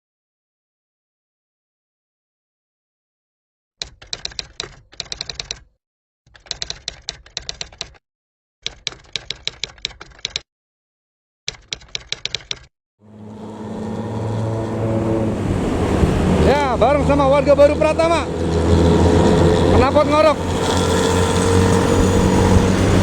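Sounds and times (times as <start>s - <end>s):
typewriter keys clacking: 3.8s - 5.7s, 6.3s - 8.0s, 8.6s - 10.4s, 11.5s - 12.7s.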